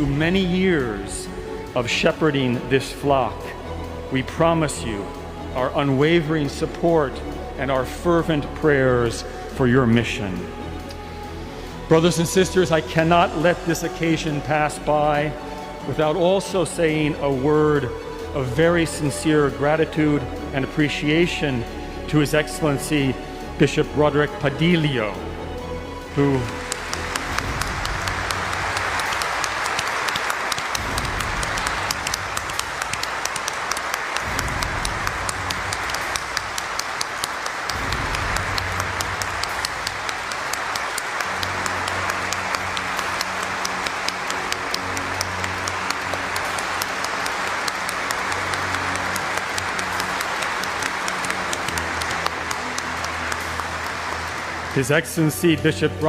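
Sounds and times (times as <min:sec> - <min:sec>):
crowd applauding: 0:26.1 - 0:56.0.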